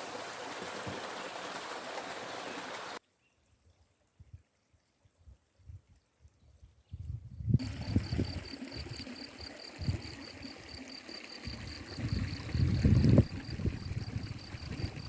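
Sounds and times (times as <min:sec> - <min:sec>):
stream rushing: 0:00.0 - 0:03.0, 0:07.6 - 0:15.0
wind buffeting microphone: 0:06.9 - 0:09.1, 0:09.7 - 0:10.2, 0:11.4 - 0:15.0.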